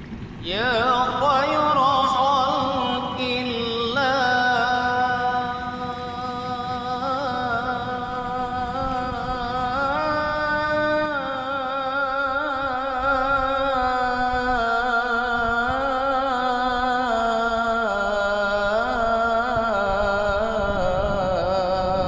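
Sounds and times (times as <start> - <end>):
person singing melismatic chant: 0.4 - 22.0.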